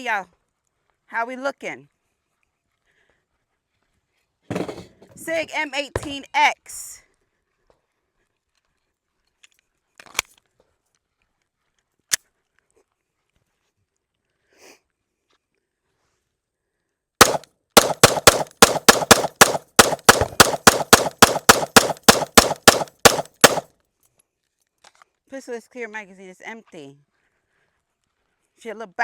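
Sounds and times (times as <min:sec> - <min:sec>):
pistol shots: 0:17.2 - 0:23.6
sharp clicks: 0:17.2 - 0:23.6.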